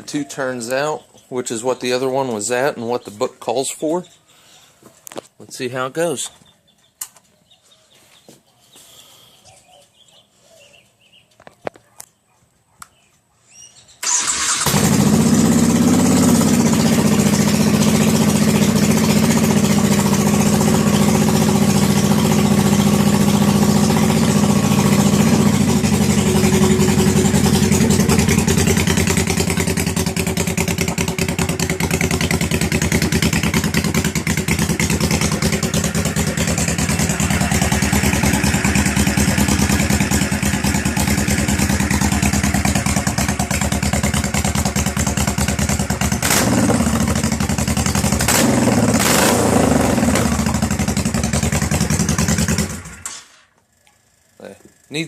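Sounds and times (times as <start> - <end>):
engine starting and idling: 14.0 - 49.4, 50.2 - 53.5.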